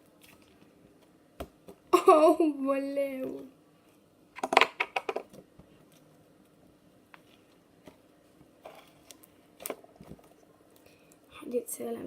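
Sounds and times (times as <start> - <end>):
handling slime and clay: 5.2 - 11.3.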